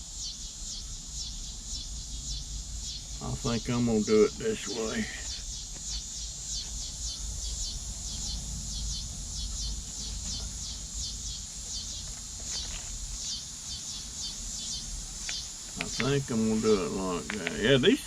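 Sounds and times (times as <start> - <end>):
small animals chirping: 4.1 - 18.0
low rumble: 6.3 - 13.2.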